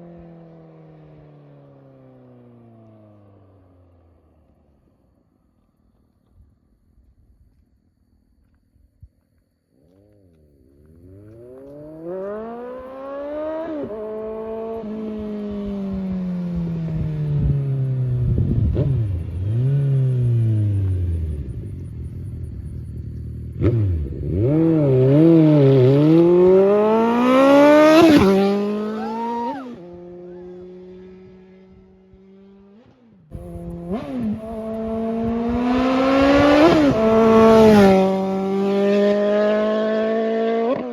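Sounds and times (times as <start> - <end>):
motorcycle engine revving: 9.8 - 40.9.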